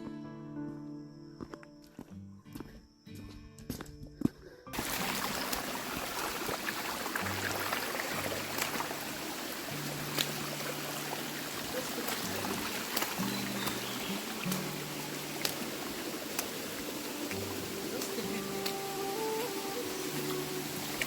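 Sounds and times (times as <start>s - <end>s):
background music low held notes: 0.0s - 6.3s, 7.1s - 21.0s
hiss of rushing water: 4.8s - 21.0s.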